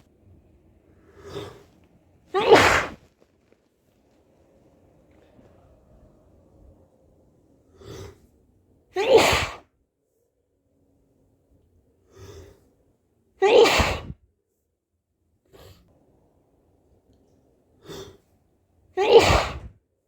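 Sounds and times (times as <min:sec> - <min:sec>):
loud sneezes: 0:02.3 - 0:03.1, 0:09.0 - 0:09.7, 0:13.4 - 0:14.2, 0:19.0 - 0:19.8.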